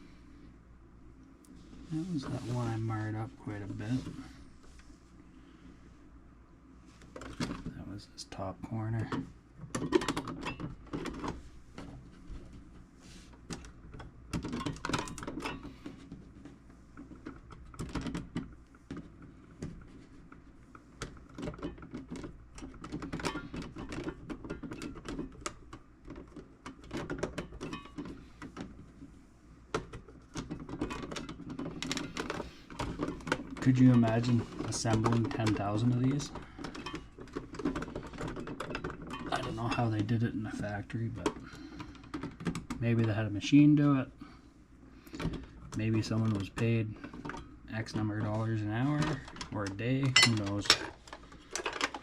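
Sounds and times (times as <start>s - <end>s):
low steady hum: 0.0s - 52.0s
toolbox parts clicking and rattling: 13.5s - 15.7s, 21.2s - 28.7s, 29.8s - 43.2s, 45.2s - 52.0s.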